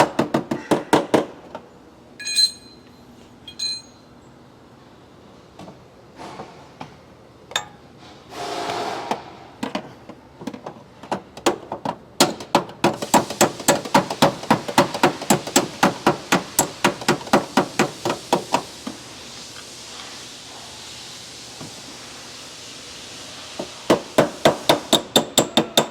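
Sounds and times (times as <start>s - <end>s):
hammer tapping on metal panel: 23.9s - 25.9s.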